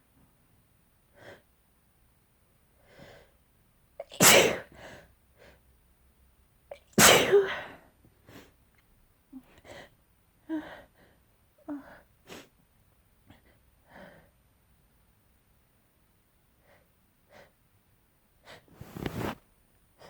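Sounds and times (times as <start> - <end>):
person sneezing: 4.0 - 4.7, 7.0 - 7.7.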